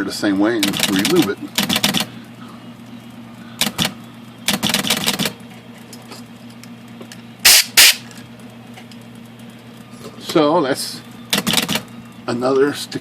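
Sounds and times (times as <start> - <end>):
typewriter mechanism clacking: 0.6 - 2.1, 4.5 - 5.4, 11.3 - 11.8
typewriter motor humming: 0.6 - 2.2, 3.6 - 5.4, 11.3 - 12.1.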